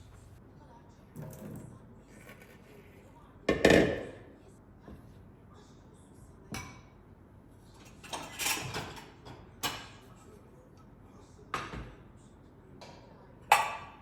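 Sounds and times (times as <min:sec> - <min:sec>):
kitchen knocks and clatters: 0:03.5 - 0:04.3, 0:07.8 - 0:10.1, 0:11.5 - 0:12.0, 0:12.8 - 0:14.0.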